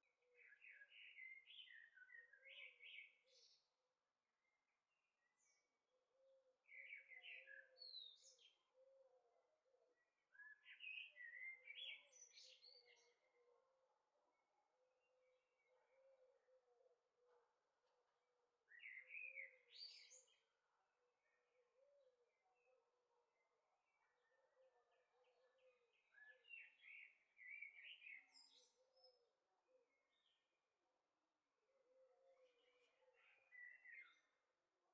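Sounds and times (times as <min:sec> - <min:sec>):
bird chirping: 0:32.3 - 0:34.4.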